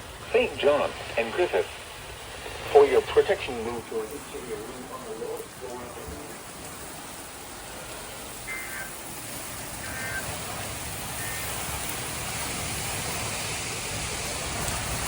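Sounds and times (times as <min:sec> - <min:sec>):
heavy rain pouring: 0:00.0 - 0:15.0.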